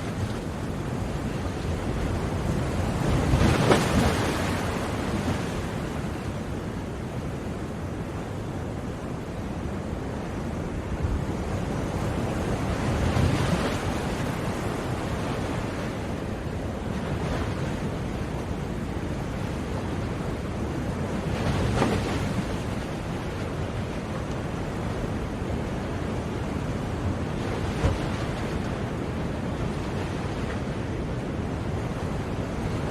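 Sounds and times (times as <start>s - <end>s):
ocean waves washing: 0.0s - 32.9s
waves breaking: 0.0s - 32.9s.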